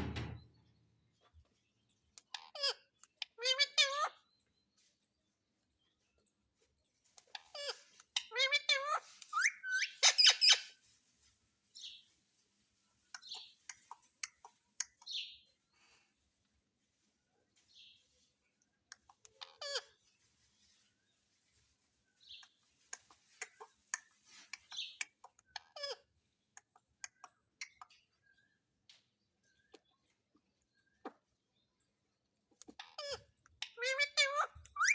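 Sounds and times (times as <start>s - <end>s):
parrot chirping and squawking: 2.2s - 4.2s, 7.3s - 10.8s, 19.0s - 20.0s, 22.2s - 28.0s, 32.6s - 34.9s.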